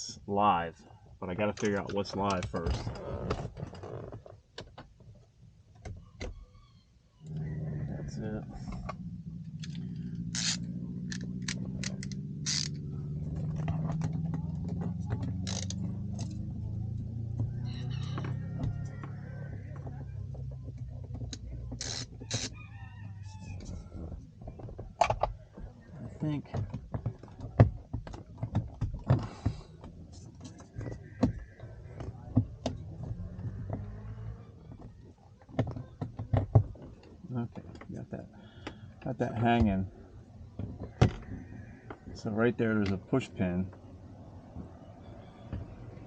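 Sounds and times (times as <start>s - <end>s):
plastic trim clicking and scraping: 8.6s - 39.0s.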